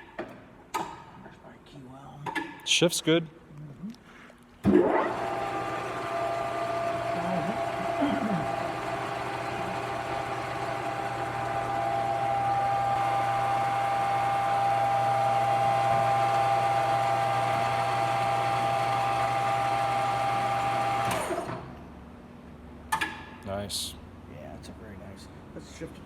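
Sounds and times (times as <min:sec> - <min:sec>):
lathe spindle gear whine: 0:05.1 - 0:21.5.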